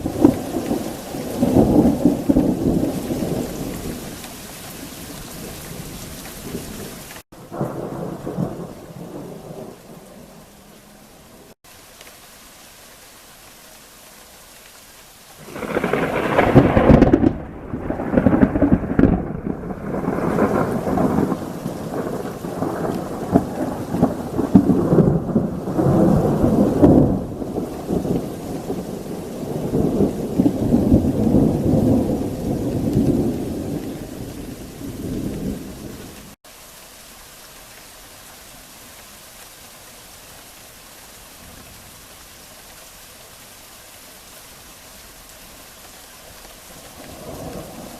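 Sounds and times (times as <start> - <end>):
rolling thunder: 0.0 - 4.0, 7.4 - 10.4, 15.4 - 36.2, 47.0 - 47.9
steady rain: 0.0 - 47.9.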